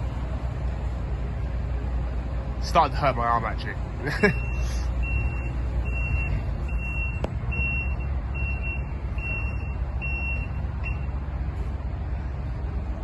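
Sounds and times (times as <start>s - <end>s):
steady low rumble: 0.0s - 13.0s
warning alarm beeping: 4.4s - 11.1s.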